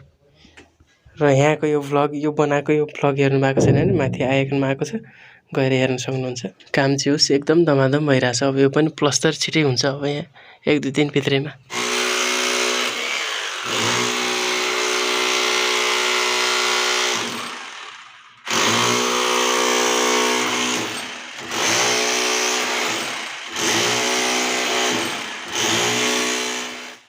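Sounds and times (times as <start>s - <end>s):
electric power tool bursts: 11.7s - 27.0s.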